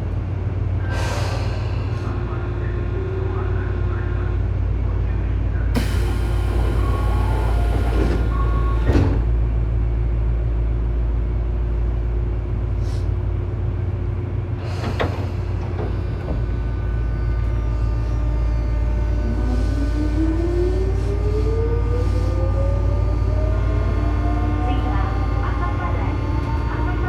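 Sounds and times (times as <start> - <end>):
train low hum: 0.0 - 27.0
air brakes hissing: 0.9 - 2.2, 5.8 - 8.9, 12.8 - 13.2, 14.6 - 17.1
rising motor whine: 16.9 - 27.0.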